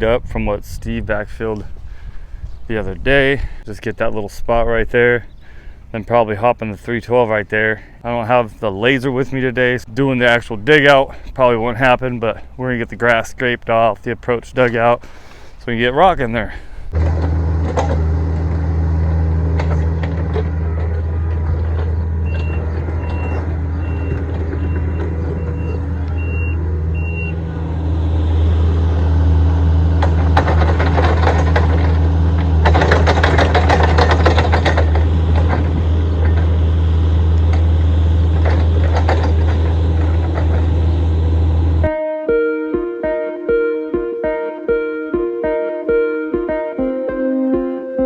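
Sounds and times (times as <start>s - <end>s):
excavator diesel engine: 16.8s - 41.9s
metal clattering and scraping: 16.9s - 26.0s, 29.8s - 41.9s
travel alarm beeping: 22.2s - 28.8s.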